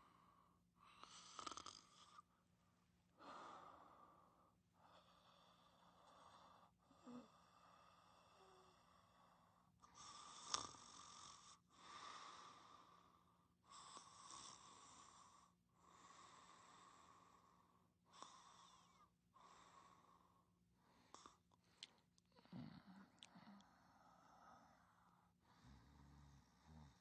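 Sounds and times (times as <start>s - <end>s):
soft hissing snoring: 0.9s - 2.2s, 7.0s - 9.2s, 9.9s - 17.4s, 25.5s - 27.0s.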